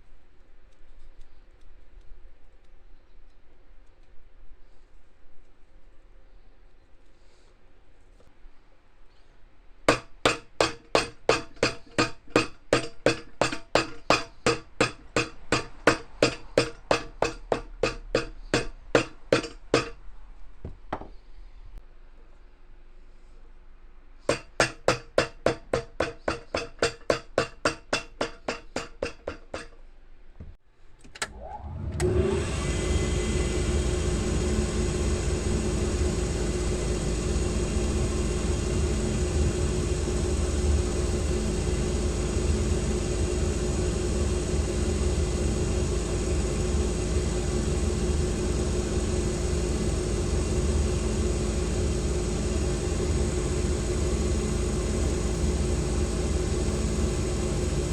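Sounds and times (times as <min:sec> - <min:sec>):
hammer blows: 0:09.9 - 0:20.0, 0:24.3 - 0:29.8
electric machine humming and whining: 0:31.3 - 0:57.9.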